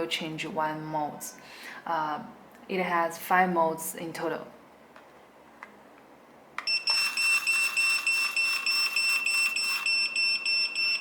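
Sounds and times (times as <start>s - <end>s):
high-pitched buzzer beeping: 6.7s - 11.0s
pager vibrating: 6.7s - 11.0s.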